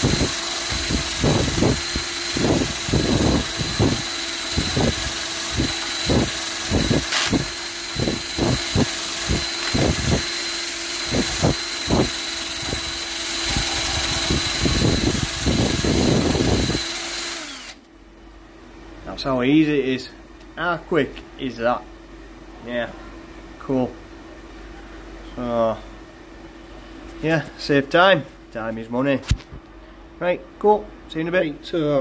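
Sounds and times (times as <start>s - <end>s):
drill knocking bursts: 0.0s - 17.8s
power drill running: 0.0s - 17.8s.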